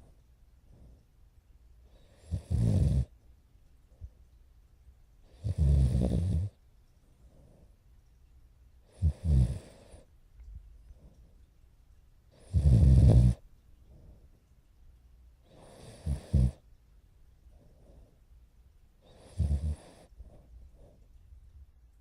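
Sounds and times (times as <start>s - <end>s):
quiet breathing: 0.0s - 4.6s, 5.2s - 22.0s
puppy snoring loudly: 1.9s - 3.1s, 5.3s - 6.6s, 8.9s - 10.1s, 12.3s - 13.4s, 15.5s - 16.6s, 19.0s - 20.4s.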